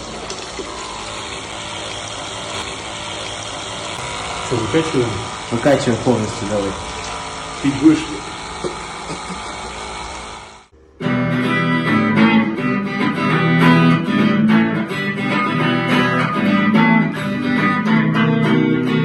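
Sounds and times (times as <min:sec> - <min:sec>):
guitar pop song: 0:11.0 - 0:19.0.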